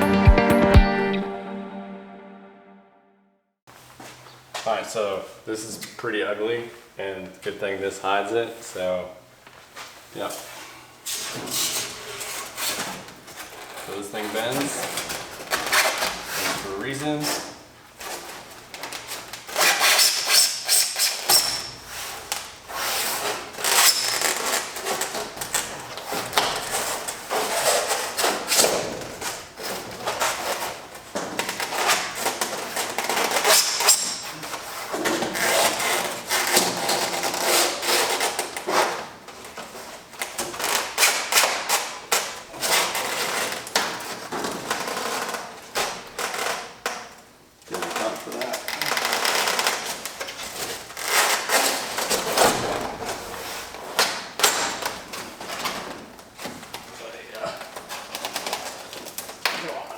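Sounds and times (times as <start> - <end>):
foam rubbing against metal door: 19.4 - 30.9.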